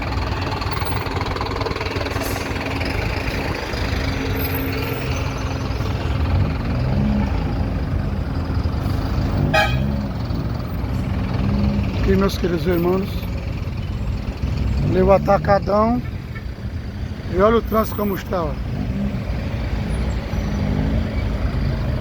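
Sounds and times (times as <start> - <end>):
vehicle engines running: 0.0 - 22.0
car horn tooting: 9.4 - 10.0.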